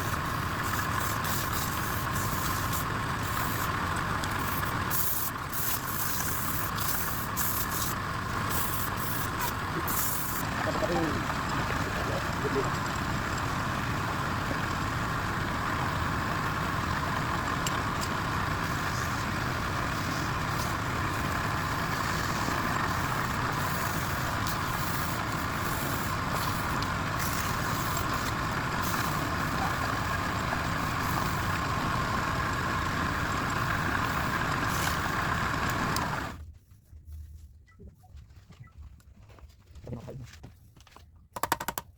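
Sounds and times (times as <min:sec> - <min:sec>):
machine running with rushing hiss: 0:00.0 - 0:36.4.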